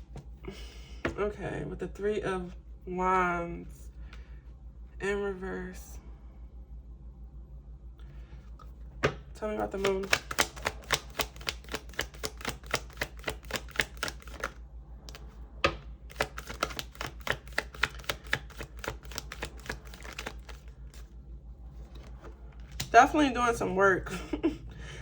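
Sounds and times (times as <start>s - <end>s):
cards being shuffled: 8.8s - 21.2s, 21.8s - 23.0s.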